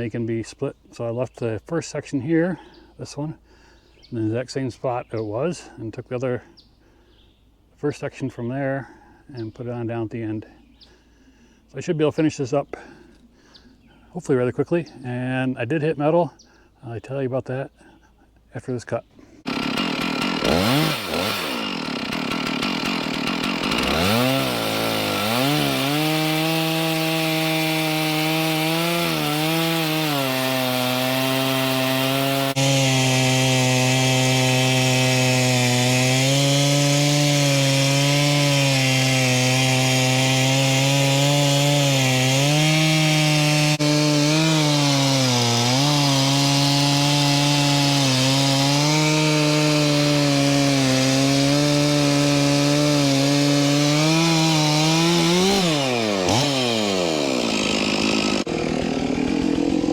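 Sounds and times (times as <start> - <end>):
chainsaw cutting through log: 19.3 - 59.9.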